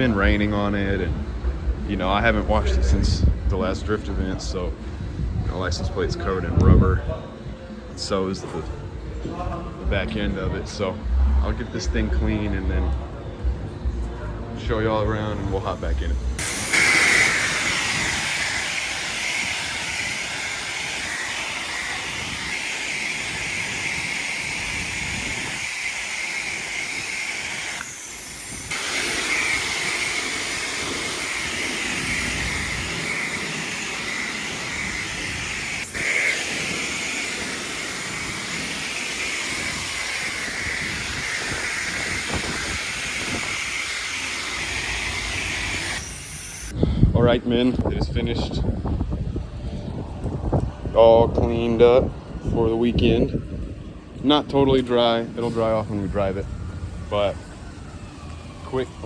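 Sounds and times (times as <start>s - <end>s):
pressure washer spraying water: 15.3s - 46.8s.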